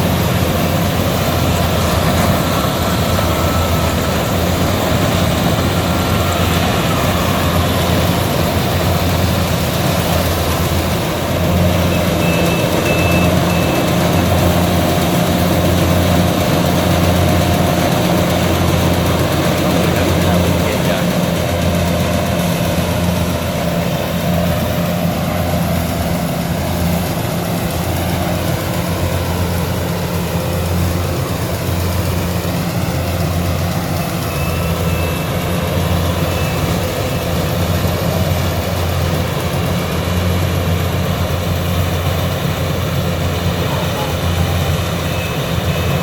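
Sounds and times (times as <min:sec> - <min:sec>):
diesel engine droning: 0:00.0 - 0:46.0.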